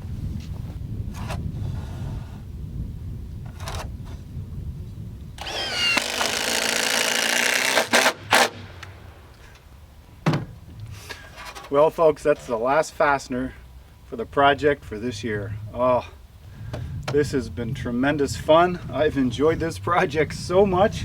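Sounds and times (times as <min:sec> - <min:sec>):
power drill whirring: 0:05.4 - 0:09.0
sharp knocks on wood: 0:10.2 - 0:10.5.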